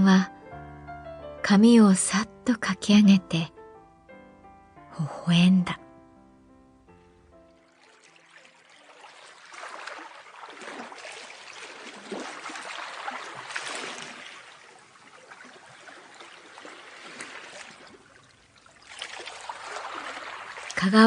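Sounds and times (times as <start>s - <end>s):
sea waves washing in: 7.8s - 21.0s.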